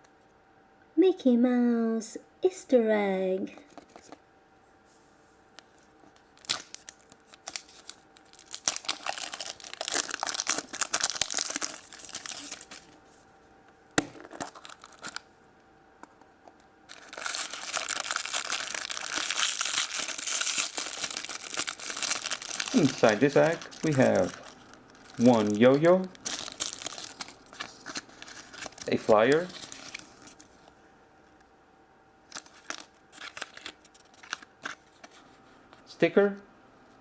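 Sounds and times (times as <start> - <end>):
packaging crinkling and tearing: 5.6 - 13.1, 14.0 - 15.3, 16.9 - 30.8, 32.3 - 35.5.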